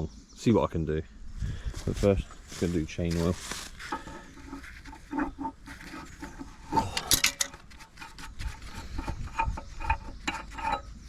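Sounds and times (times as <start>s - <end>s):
clicks and knocks of handling: 3.1s - 10.9s.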